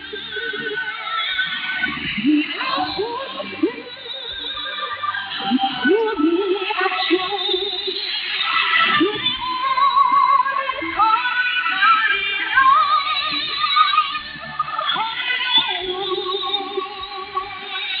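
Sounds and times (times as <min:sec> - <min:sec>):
female chorus singing: 0:00.0 - 0:18.0
musical accompaniment: 0:00.0 - 0:18.0.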